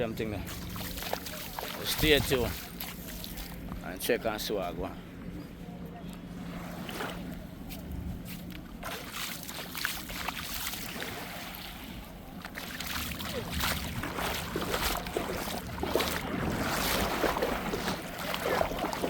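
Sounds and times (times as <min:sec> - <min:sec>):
seawater splashing: 0:00.4 - 0:03.7, 0:08.4 - 0:19.0
wind buffeting microphone: 0:01.8 - 0:02.7.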